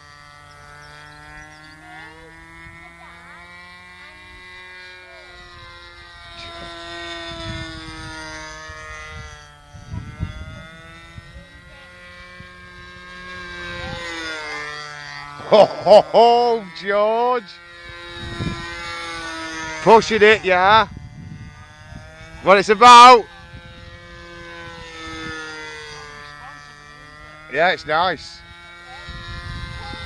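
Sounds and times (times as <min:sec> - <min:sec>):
model airplane engine droning: 0:00.0 - 0:30.0
wind buffeting microphone: 0:05.4 - 0:15.4, 0:17.8 - 0:30.0.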